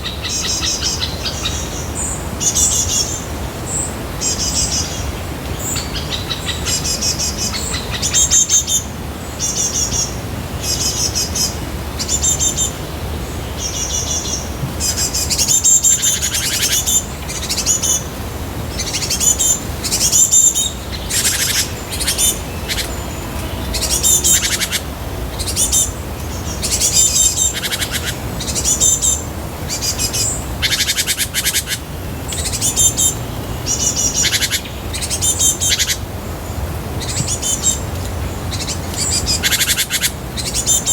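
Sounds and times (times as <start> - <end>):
bird trilling calls: 18.7 - 36.1, 37.0 - 40.9.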